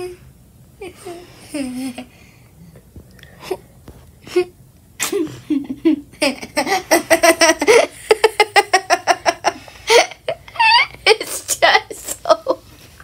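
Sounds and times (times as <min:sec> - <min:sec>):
child laughing: 0:05.1 - 0:12.6.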